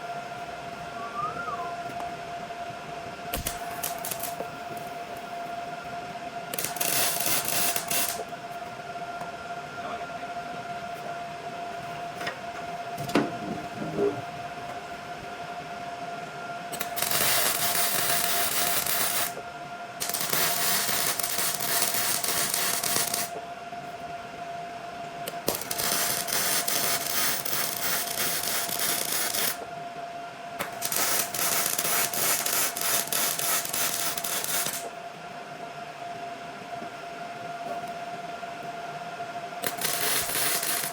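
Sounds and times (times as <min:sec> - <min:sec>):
arc welding crackle: 0:03.3 - 0:05.4, 0:06.5 - 0:08.3, 0:16.7 - 0:19.4, 0:20.0 - 0:23.4, 0:25.3 - 0:29.6, 0:30.6 - 0:34.9, 0:39.6 - 0:40.9.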